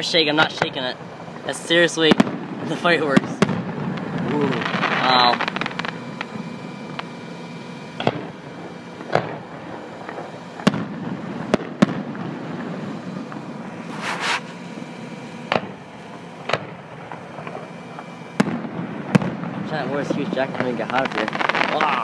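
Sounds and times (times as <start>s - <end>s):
fireworks shells booming: 0.0s - 22.0s
short hissing burst: 13.7s - 14.8s.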